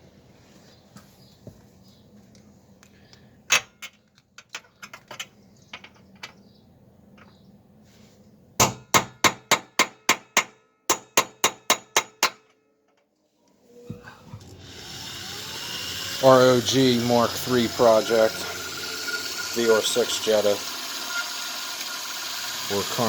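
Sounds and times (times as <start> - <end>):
hammer striking metal: 8.6 - 12.6.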